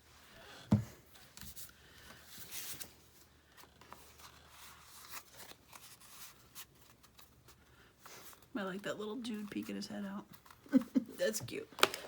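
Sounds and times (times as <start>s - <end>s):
paper rustling: 3.6s - 8.5s.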